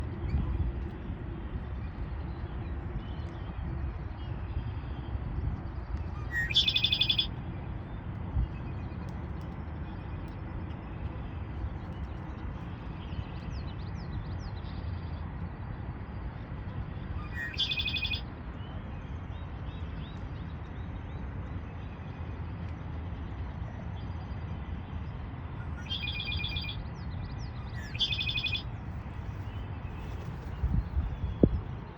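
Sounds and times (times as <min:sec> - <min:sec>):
steady low rumble: 0:00.0 - 0:31.9
blackbird singing buzzy trill: 0:06.3 - 0:07.3, 0:17.2 - 0:18.2, 0:25.8 - 0:26.9, 0:27.5 - 0:28.7.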